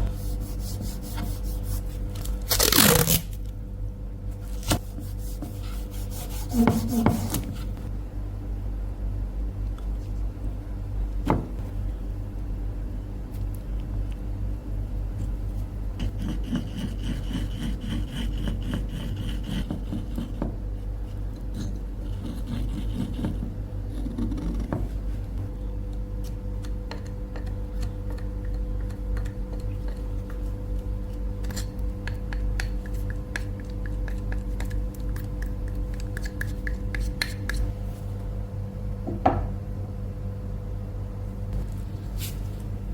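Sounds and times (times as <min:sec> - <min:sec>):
material rubbing and scraping: 0:00.0 - 0:03.3.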